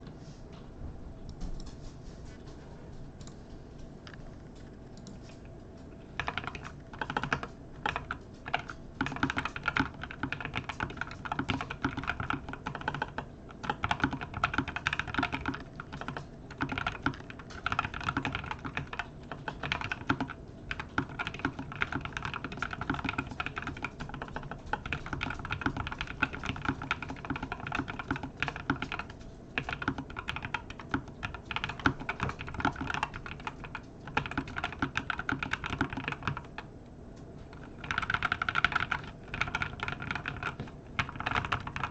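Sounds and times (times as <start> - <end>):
mechanical keyboard typing: 6.2 - 36.7, 37.5 - 41.9.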